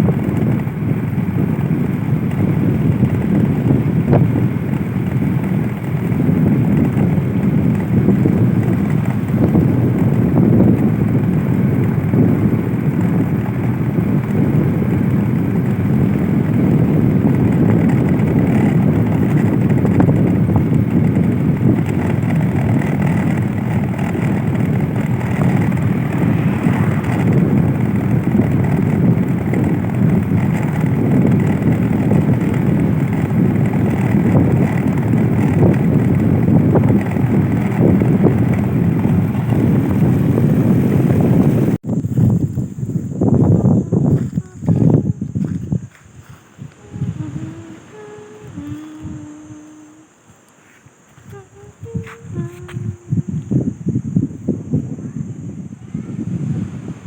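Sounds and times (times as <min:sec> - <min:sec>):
wind noise on microphone: 0:00.0 - 0:57.0
loud engine drone: 0:17.6 - 0:41.8, 0:46.7 - 0:50.2.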